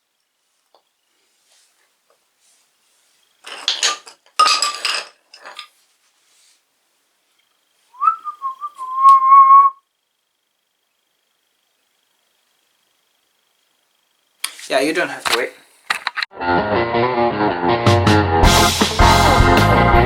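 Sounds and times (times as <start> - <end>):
clattering clinking knocks: 3.4 - 5.7
person whistling: 8.0 - 9.8.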